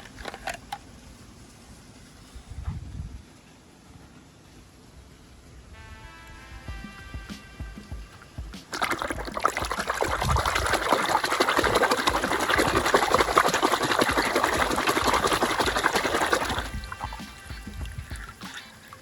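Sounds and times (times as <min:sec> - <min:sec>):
water running and splashing: 0:07.2 - 0:19.0.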